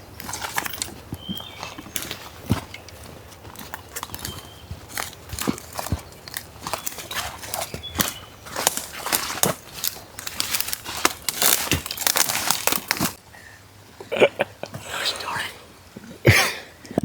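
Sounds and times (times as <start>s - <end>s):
footsteps crunching through dry leaves: 0.0s - 13.2s.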